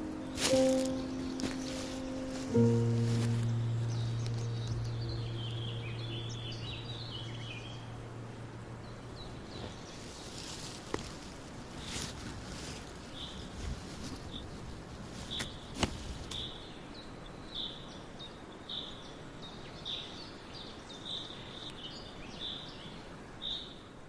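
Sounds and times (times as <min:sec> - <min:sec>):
bird chirping: 0:00.0 - 0:15.7
steady outdoor hiss: 0:00.0 - 0:24.0.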